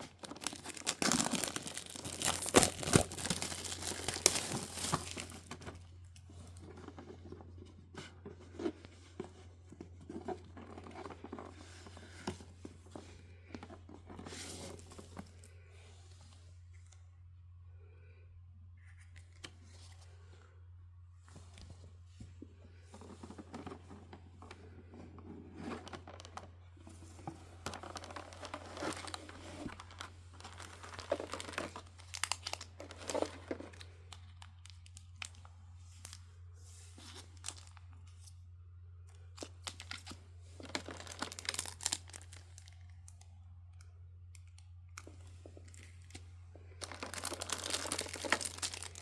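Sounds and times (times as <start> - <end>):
packaging torn and crinkled: 0.0 - 5.7, 27.7 - 35.4, 39.4 - 42.9, 46.8 - 49.0.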